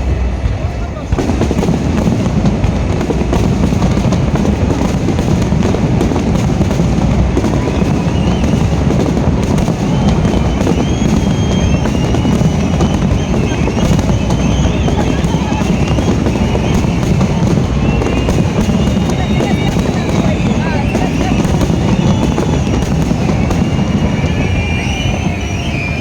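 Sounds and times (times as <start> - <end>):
low rumble: 0.0 - 5.2
fireworks bursting: 0.0 - 26.0
high gliding whistles: 7.4 - 26.0.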